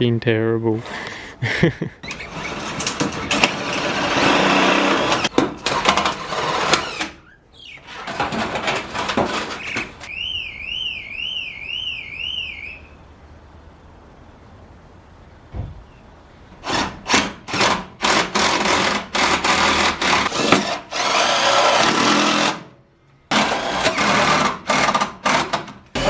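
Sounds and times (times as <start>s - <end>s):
rough scraping and clattering: 2.0s - 7.2s, 7.8s - 10.1s
warbling electronic alarm tone: 10.1s - 13.0s.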